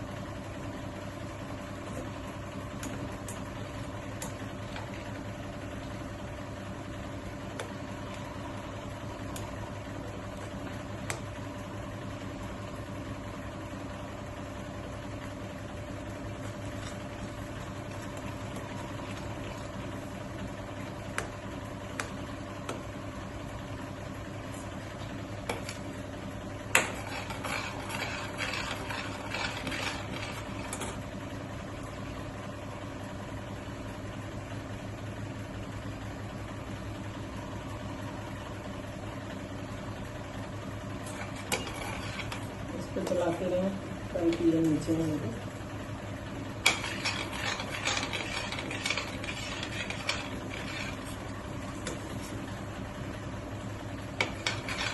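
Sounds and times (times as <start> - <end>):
low kitchen hum: 0.0 - 54.9
spoon scraping a pan: 26.8 - 30.9, 41.1 - 42.5, 46.6 - 52.3, 54.2 - 54.9.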